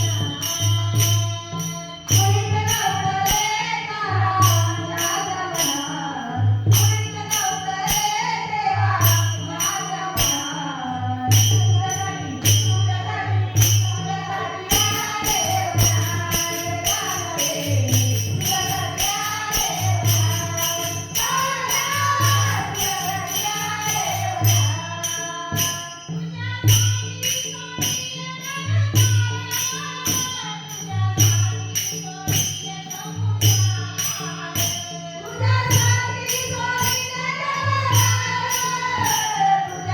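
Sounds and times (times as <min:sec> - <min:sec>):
jingling tambourine percussion: 0:00.0 - 0:39.9
hand drum beat: 0:11.5 - 0:25.0.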